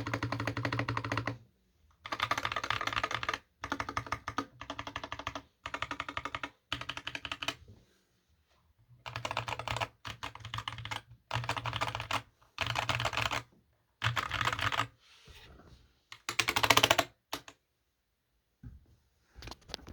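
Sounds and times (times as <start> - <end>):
mechanical keyboard typing: 0.0 - 1.4, 2.0 - 7.6, 9.0 - 14.9, 16.1 - 17.6.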